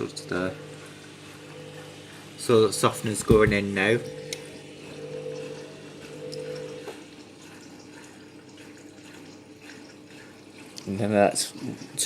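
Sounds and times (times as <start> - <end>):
steady low hum: 0.0 - 7.4
water running into drum: 0.0 - 12.0.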